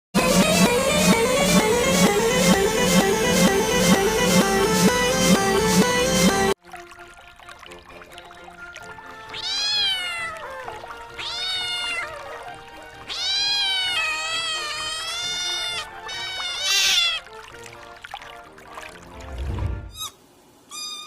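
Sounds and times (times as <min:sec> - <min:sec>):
quiet background music: 0:01.6 - 0:20.0
cat meowing: 0:09.3 - 0:17.3, 0:20.0 - 0:21.0.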